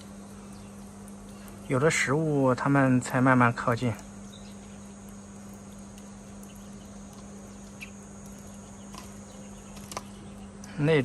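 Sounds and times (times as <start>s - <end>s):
steady low hum: 0.0s - 11.0s
sparrow chirps: 0.5s - 2.0s, 4.2s - 5.0s, 6.4s - 10.5s.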